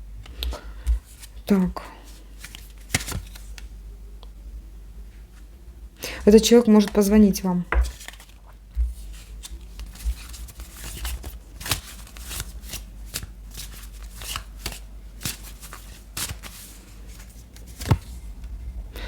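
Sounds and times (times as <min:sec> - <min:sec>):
cards being shuffled: 0:00.2 - 0:03.7, 0:07.7 - 0:18.3.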